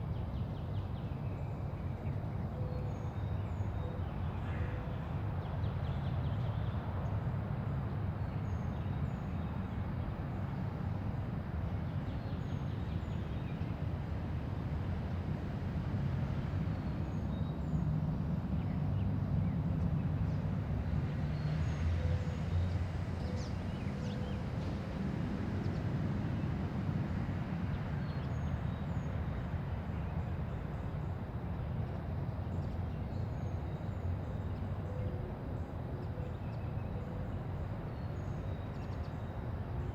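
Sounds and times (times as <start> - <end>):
distant traffic hum: 6.8 - 39.9.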